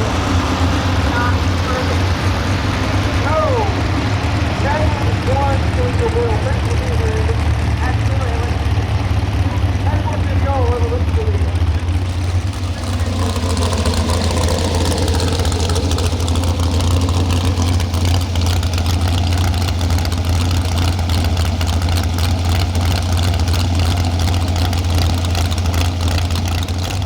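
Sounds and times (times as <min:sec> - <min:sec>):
truck engine running loud: 0:00.0 - 0:27.0.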